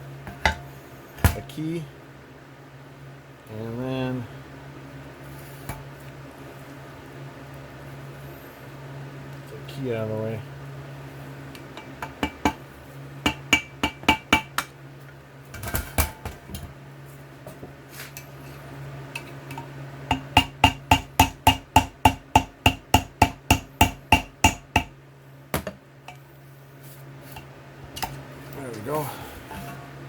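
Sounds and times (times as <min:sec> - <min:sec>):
hammer tapping on metal: 0:11.8 - 0:12.6, 0:13.3 - 0:14.7, 0:19.2 - 0:25.0.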